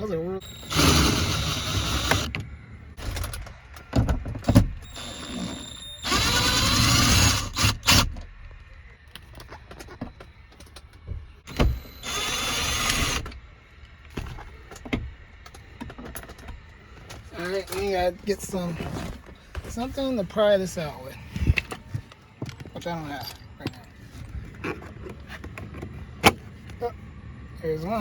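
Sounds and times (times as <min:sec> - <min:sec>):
cordless drill whirring: 0:00.4 - 0:02.4, 0:04.8 - 0:08.3, 0:11.5 - 0:13.4.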